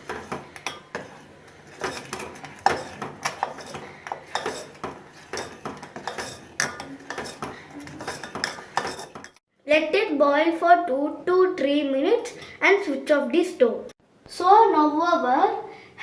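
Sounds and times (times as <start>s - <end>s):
spoon stirring in a pan: 0.0s - 9.4s.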